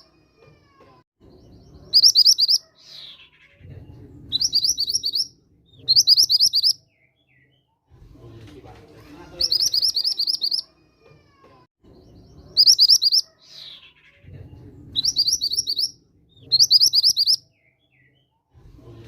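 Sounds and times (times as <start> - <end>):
bird chirping rapidly: 1.3 - 7.5, 9.2 - 10.7, 11.9 - 14.3, 14.9 - 18.2.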